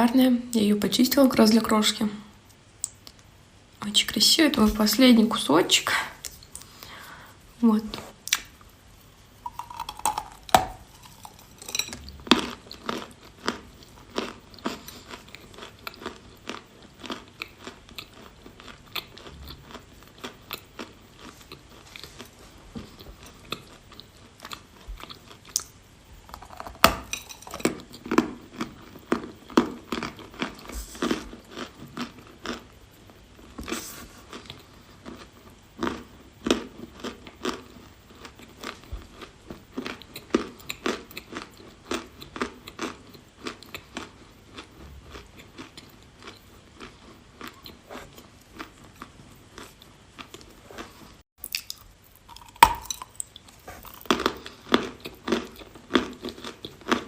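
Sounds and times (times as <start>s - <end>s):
person crunching chalk: 9.4s - 15.2s.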